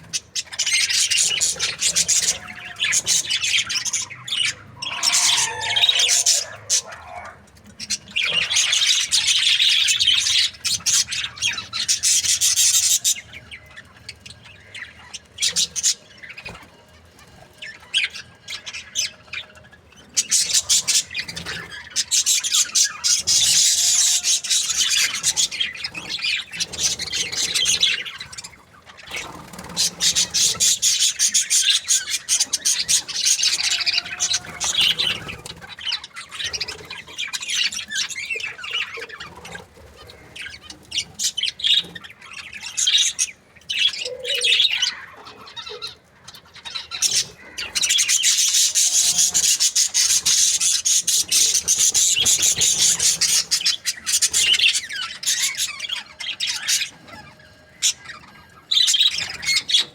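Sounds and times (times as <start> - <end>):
budgies chirping and chattering: 0.0 - 59.9.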